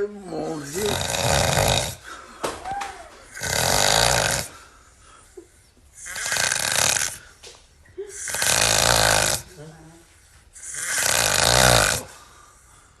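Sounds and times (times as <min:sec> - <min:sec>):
man snoring loudly: 0:00.4 - 0:02.1, 0:03.3 - 0:04.6, 0:06.0 - 0:07.2, 0:08.2 - 0:09.5, 0:10.6 - 0:12.2
quiet breathing: 0:09.4 - 0:11.1, 0:12.0 - 0:13.0.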